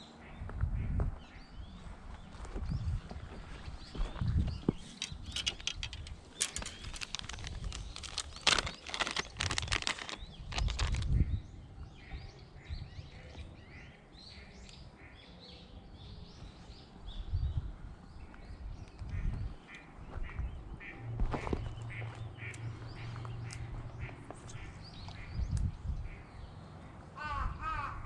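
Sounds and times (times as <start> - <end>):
handling clicks and rustling: 4.7 - 11.1.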